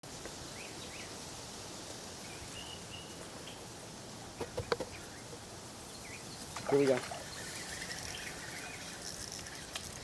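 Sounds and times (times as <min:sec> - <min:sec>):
steady hiss: 0:00.0 - 0:10.0
sharp clicks or knocks: 0:04.4 - 0:05.0
bird chirps: 0:04.4 - 0:09.8.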